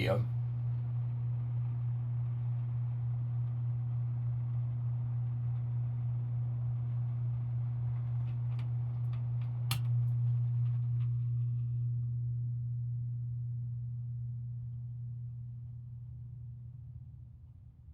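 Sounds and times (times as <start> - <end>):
ceiling fan humming: 0.0 - 17.8.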